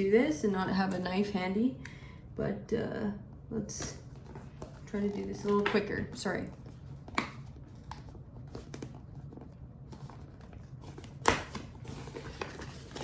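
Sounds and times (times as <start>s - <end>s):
cardboard tearing: 10.2s - 13.0s.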